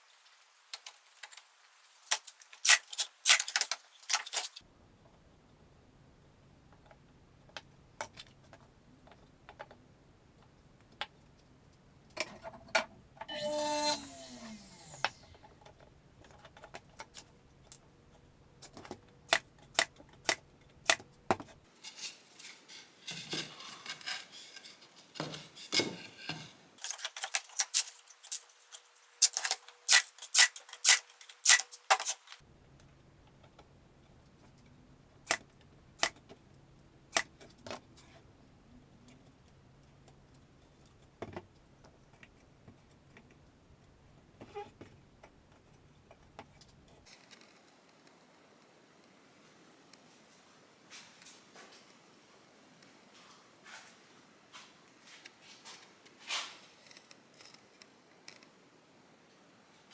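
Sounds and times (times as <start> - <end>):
falling pitched sound: 13.3 - 15.4.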